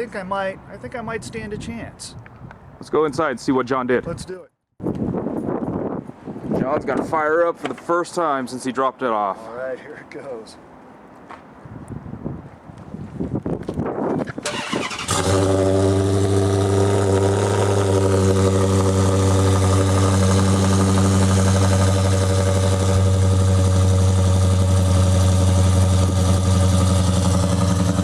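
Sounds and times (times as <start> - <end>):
car engine starting and idling: 14.4 - 28.0.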